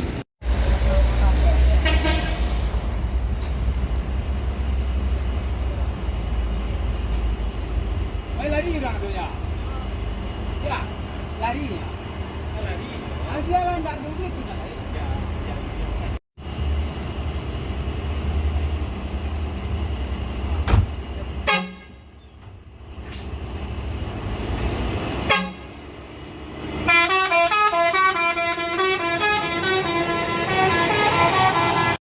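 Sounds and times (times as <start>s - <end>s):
bus engine idling: 0.0s - 32.0s
multi-tone horn melody: 1.8s - 2.5s, 21.4s - 22.1s, 25.3s - 25.8s, 26.8s - 32.0s.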